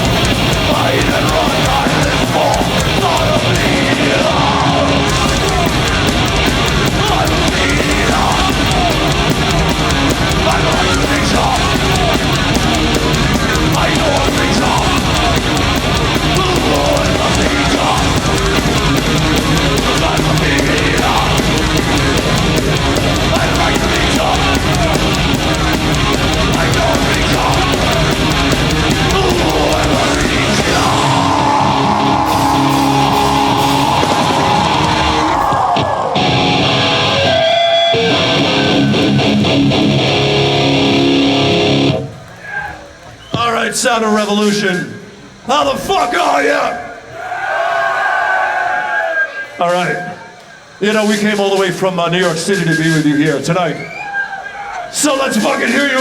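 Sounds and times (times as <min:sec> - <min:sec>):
heavy metal band playing: 0:00.0 - 0:42.2.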